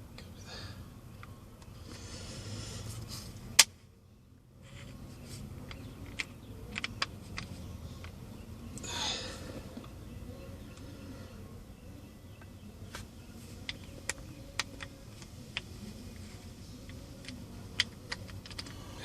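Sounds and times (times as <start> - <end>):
small metal parts clicking: 5.6 - 8.2, 13.6 - 19.0.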